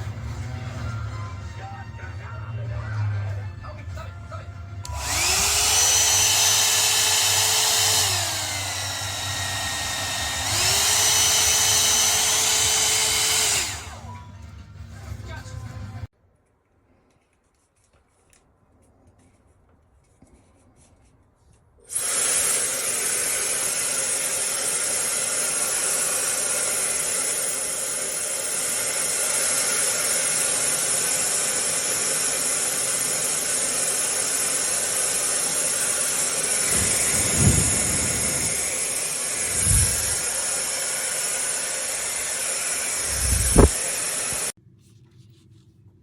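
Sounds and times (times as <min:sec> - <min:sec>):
hair dryer running: 0:04.8 - 0:14.2, 0:21.9 - 0:44.6.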